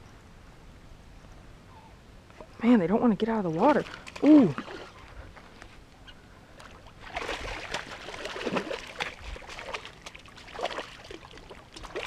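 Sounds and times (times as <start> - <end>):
fish splashing in water: 6.6 - 12.0.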